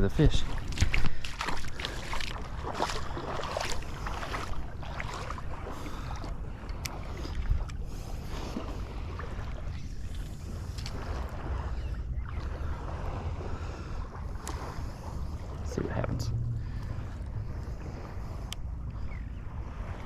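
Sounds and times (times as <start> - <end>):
water sloshing at shoreline: 0.0 - 20.0
wind buffeting microphone: 0.0 - 20.0.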